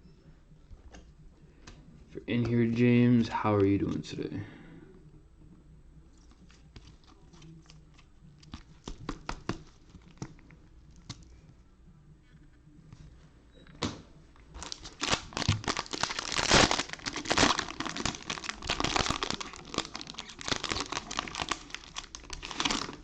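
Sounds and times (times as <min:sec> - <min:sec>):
wrapper crinkling: 0:14.6 - 0:23.0.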